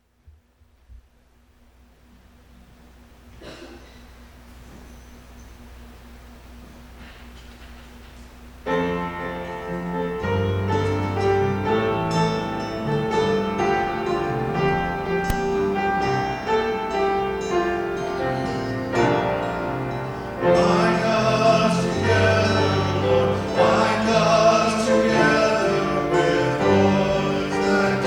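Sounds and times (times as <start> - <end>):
piano playing a slow hymn: 8.6 - 28.0.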